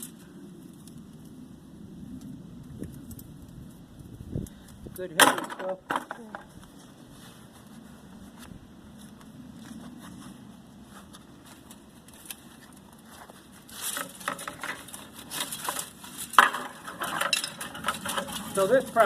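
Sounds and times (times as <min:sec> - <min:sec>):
copper wire clinking and rattling: 0:13.6 - 0:19.0.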